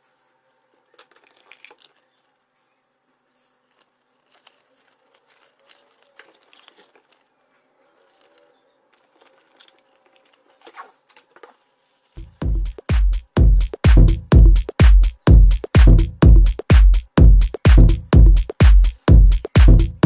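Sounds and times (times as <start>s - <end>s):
packaging crinkling: 0.8s - 2.4s, 3.6s - 12.3s
electronic dance music: 12.2s - 20.0s.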